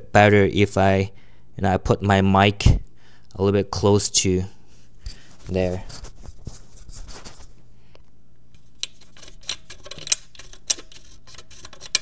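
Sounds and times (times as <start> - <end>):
scooter wheel clicking and rattling: 8.8 - 12.0.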